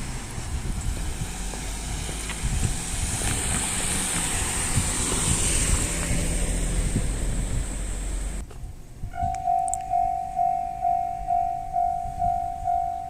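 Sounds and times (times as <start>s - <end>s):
passing vehicle rumble: 0.0s - 8.4s
wind buffeting microphone: 0.0s - 13.0s.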